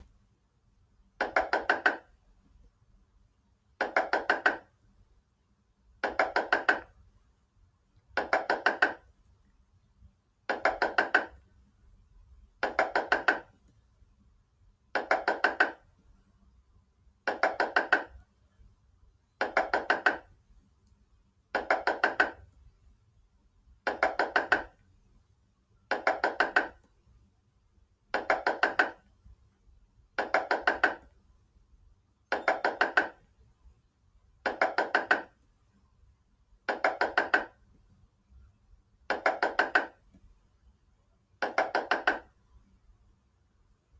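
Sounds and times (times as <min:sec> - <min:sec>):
knocking on a door: 0:17.3 - 0:18.1, 0:32.3 - 0:33.2, 0:34.5 - 0:35.3, 0:36.7 - 0:37.5, 0:39.1 - 0:40.0, 0:41.4 - 0:42.3.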